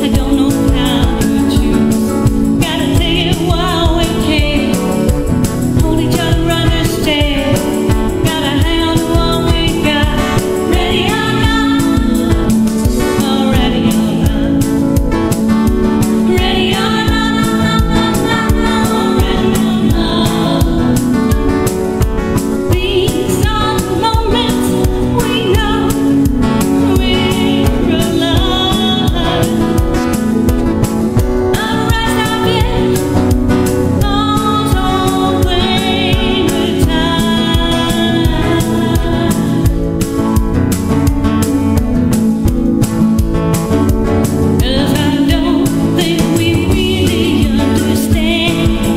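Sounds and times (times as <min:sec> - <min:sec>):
instrumental backing with beat: 0:00.0 - 0:48.9.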